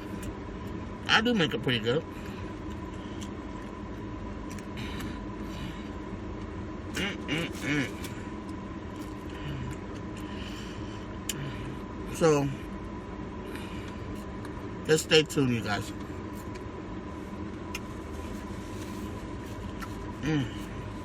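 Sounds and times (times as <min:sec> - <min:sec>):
car interior hum: 0:00.0 - 0:21.0
short vocal sounds: 0:06.9 - 0:08.2, 0:20.2 - 0:20.7.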